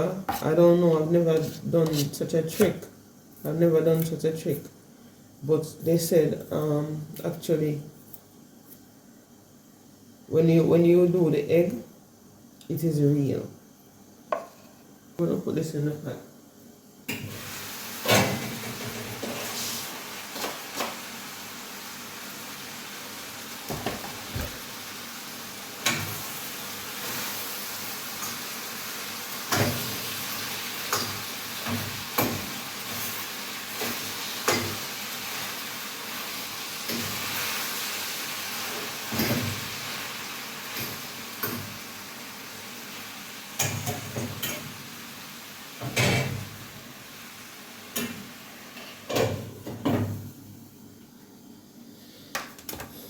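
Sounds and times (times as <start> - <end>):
food sizzling in a pot: 17.1 - 49.1
utensils and pans clattering: 39.1 - 39.7, 45.9 - 46.4.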